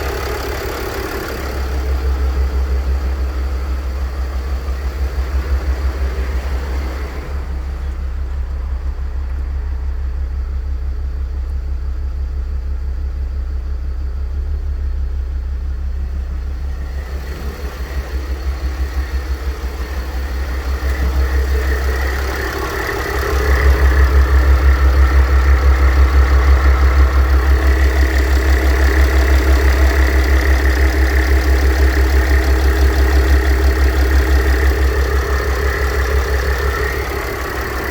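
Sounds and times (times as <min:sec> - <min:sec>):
diesel engine idling: 0:00.0 - 0:37.9
compressor bearing whirring: 0:16.2 - 0:37.9.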